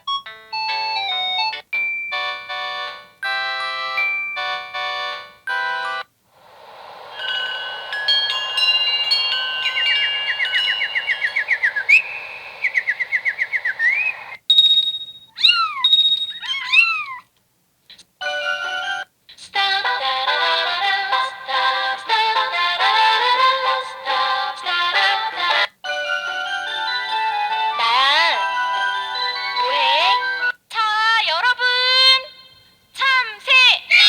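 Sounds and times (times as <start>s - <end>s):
phone ringtone melody: 0.0s - 6.1s, 7.2s - 12.6s, 18.2s - 19.1s, 25.8s - 30.6s
hiss with fast chirps: 6.3s - 14.4s.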